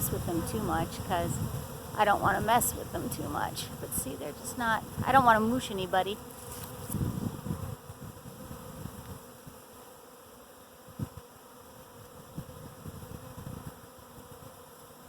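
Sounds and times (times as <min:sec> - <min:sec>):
hum of many bees: 0:00.0 - 0:15.0.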